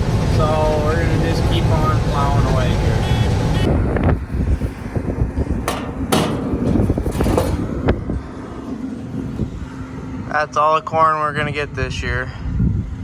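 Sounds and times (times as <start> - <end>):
low engine rumble: 0.0 - 13.0
sharp knocks and clatter: 5.6 - 8.2.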